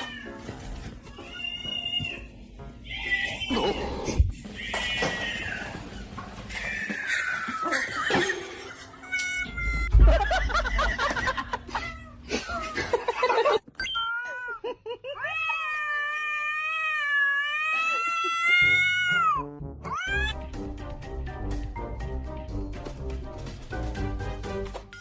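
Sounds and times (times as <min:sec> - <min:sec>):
music: 0:00.0 - 0:04.7, 0:18.6 - 0:25.0
cat yowling: 0:15.2 - 0:20.3.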